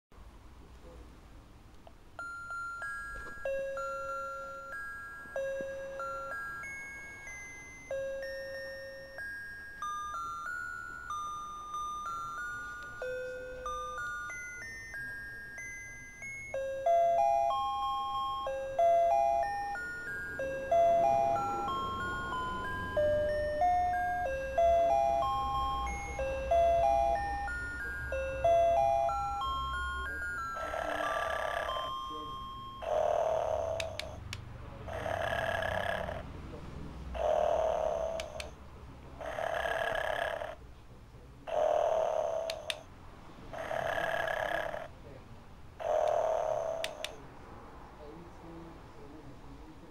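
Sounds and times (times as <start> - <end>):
electronic chime melody: 2.2 - 33.9
toy recorded snore: 30.6 - 31.9, 32.8 - 34.2, 34.9 - 36.2, 37.2 - 38.5, 39.2 - 40.6, 41.5 - 42.8, 43.5 - 44.9, 45.8 - 47.1.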